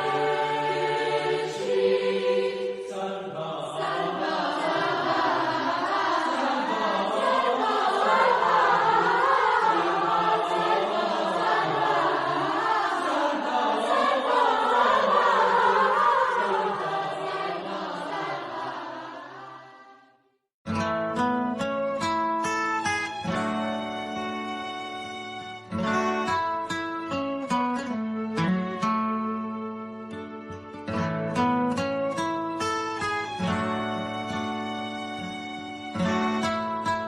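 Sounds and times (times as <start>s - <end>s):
choir singing: 0.0s - 20.2s, 33.3s - 35.4s.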